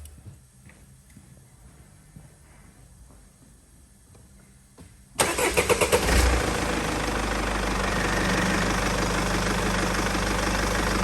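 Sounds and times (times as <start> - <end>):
starter motor cranking: 5.2 - 6.2
diesel engine idling: 5.2 - 11.0.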